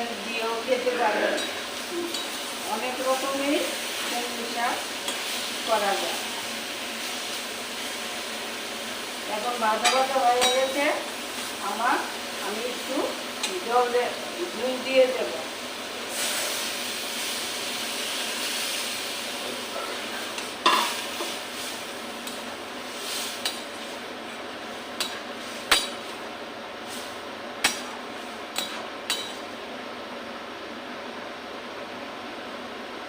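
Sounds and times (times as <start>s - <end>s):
water sizzling in hot pan: 0.8s - 26.1s.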